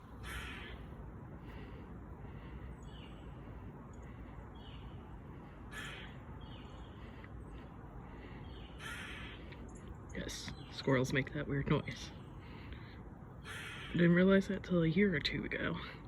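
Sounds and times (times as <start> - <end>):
squirrel alarm calls: 0.0 - 0.9, 5.7 - 11.0, 13.4 - 14.4.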